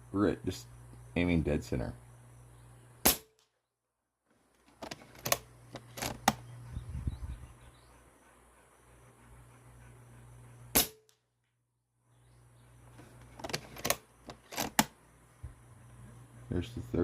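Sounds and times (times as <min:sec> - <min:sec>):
loud air rifle shot: 0:03.0 - 0:03.4, 0:10.7 - 0:11.1.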